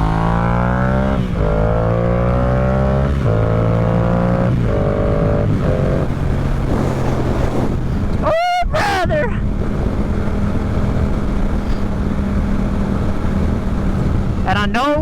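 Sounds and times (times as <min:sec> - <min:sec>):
motorcycle engine accelerating: 0:00.0 - 0:08.3, 0:09.4 - 0:14.5
wind rush: 0:04.6 - 0:14.6.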